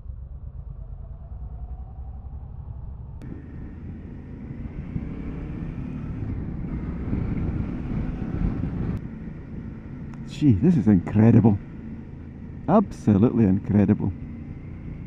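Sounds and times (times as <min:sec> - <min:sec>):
wind noise on microphone: 0:00.0 - 0:09.0
motorcycle engine running: 0:03.2 - 0:15.0.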